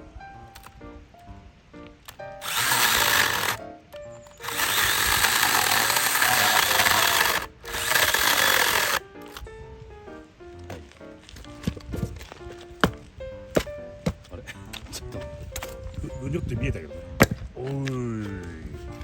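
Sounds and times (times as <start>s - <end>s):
quiet background music: 0.0s - 19.0s
rushing machine noise: 2.4s - 3.6s, 4.4s - 9.0s.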